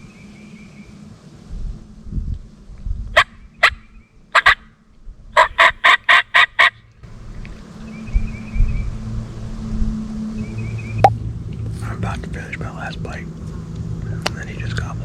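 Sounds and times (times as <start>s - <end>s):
turkey yelping: 3.2s - 3.8s, 4.4s - 4.6s, 5.4s - 6.8s.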